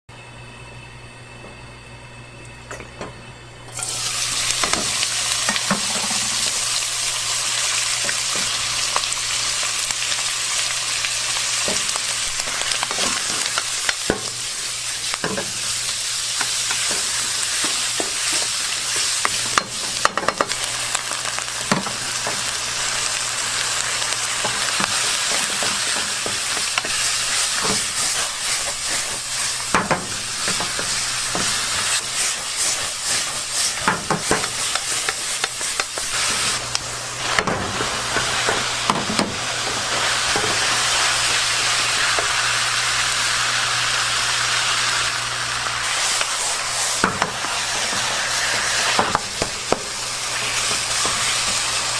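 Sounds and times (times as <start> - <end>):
rice sizzling in a pan: 3.7 - 51.9
utensil scraping a pan: 24.4 - 36.6.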